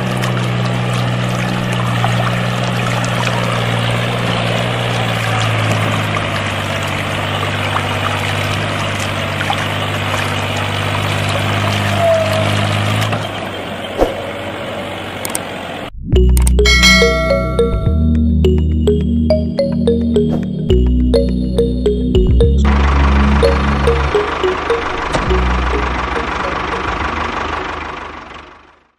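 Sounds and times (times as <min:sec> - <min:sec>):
water pouring and splashing: 0:00.0 - 0:13.3.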